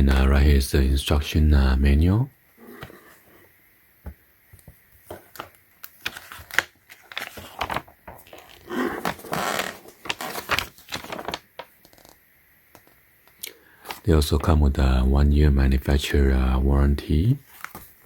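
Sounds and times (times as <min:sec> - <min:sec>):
paper pages rustling: 0:05.0 - 0:12.2, 0:17.4 - 0:18.0.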